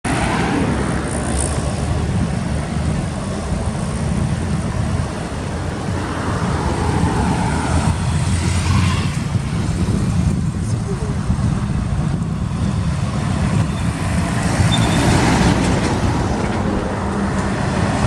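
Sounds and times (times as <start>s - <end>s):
truck engine and road rumble: 0.0s - 18.0s.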